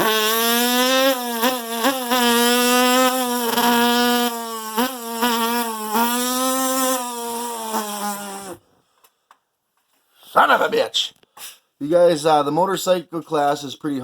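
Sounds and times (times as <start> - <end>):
man imitating dirt bike: 0.0 - 8.6, 10.3 - 11.6.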